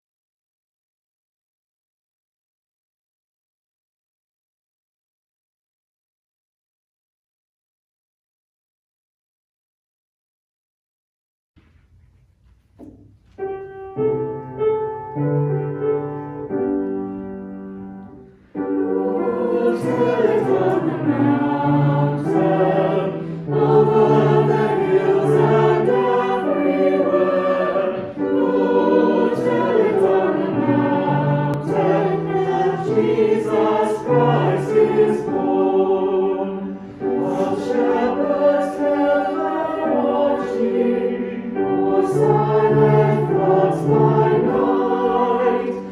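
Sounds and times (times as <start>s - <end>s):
choir singing a hymn: 14.6s - 45.9s.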